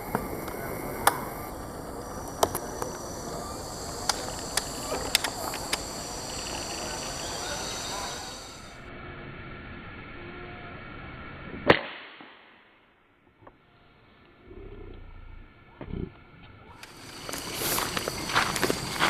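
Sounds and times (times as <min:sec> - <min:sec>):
high-pitched insect drone: 0:00.0 - 0:11.6, 0:13.6 - 0:19.0
sharp clicks and snaps: 0:04.0 - 0:05.9.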